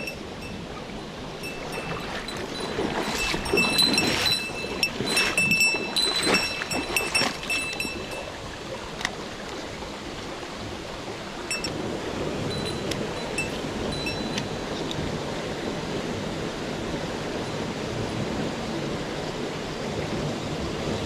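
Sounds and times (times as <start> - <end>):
sharp ticks with ringing tone: 0.0 - 0.7, 1.4 - 8.4, 11.5 - 11.8, 12.5 - 15.0
stream water running: 0.0 - 21.0.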